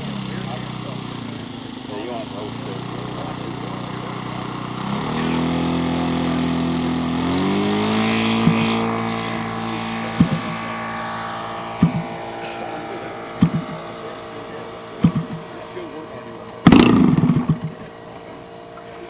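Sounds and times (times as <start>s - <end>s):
model airplane engine running: 0.0s - 19.0s
short sharp knocks: 10.2s - 10.6s, 11.8s - 12.2s, 13.4s - 13.8s, 15.0s - 15.5s.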